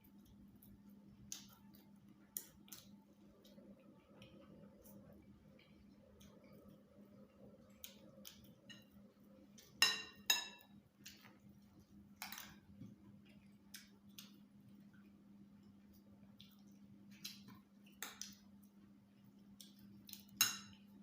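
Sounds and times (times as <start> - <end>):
faint steady hum: 0.0 - 21.0
utensil clinking against dish: 9.8 - 10.7.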